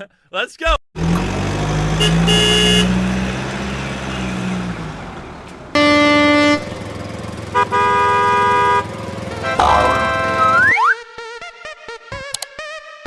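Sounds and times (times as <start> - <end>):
motor vehicle running: 1.0 - 10.8
horn honks: 2.0 - 3.2, 5.7 - 10.9.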